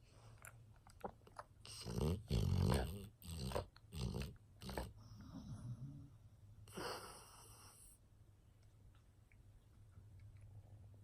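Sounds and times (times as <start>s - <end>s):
dog snoring and snorting: 1.6s - 6.1s, 6.7s - 7.9s.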